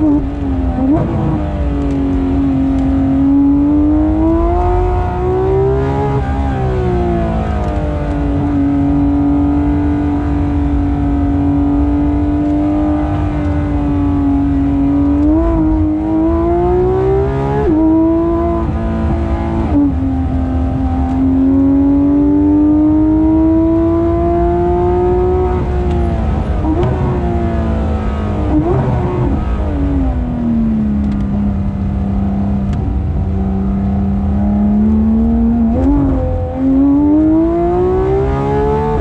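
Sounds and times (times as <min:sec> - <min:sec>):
car engine running: 0:17.4 - 0:38.1.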